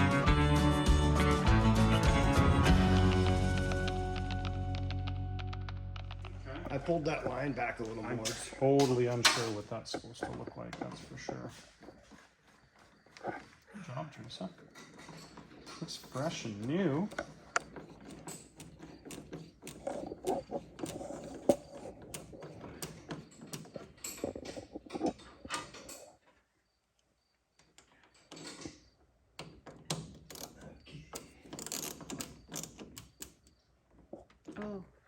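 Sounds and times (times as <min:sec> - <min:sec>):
ratchet clicking: 0:14.8 - 0:24.2, 0:31.2 - 0:33.6.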